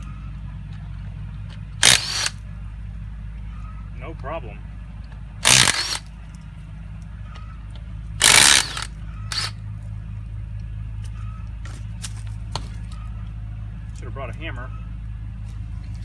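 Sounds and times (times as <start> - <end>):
impact driver hammering: 1.8 - 2.4, 5.4 - 6.1, 8.2 - 9.5.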